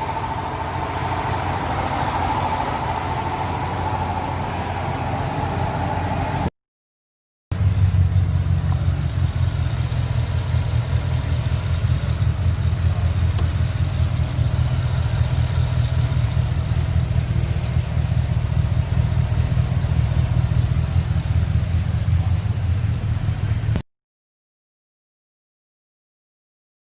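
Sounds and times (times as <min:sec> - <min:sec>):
engine idling rumble: 0:00.0 - 0:06.5, 0:07.5 - 0:23.8
higher-pitched engine sound: 0:00.0 - 0:06.5, 0:07.5 - 0:23.8
exhaust heat shield rattle: 0:07.6 - 0:23.8.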